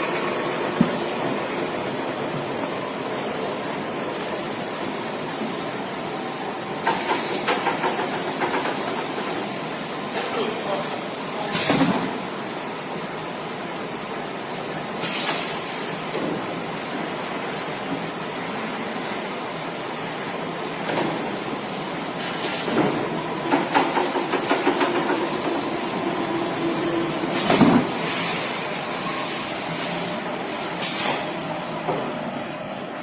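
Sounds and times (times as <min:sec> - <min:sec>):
conveyor and machinery running: 0:00.0 - 0:33.0
compressed air hisses: 0:15.0 - 0:16.0, 0:27.3 - 0:28.6.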